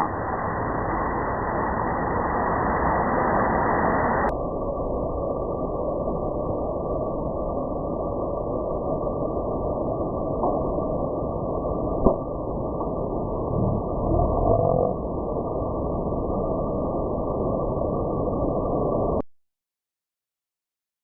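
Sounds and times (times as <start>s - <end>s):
low rumbling background noise: 0.0s - 19.2s.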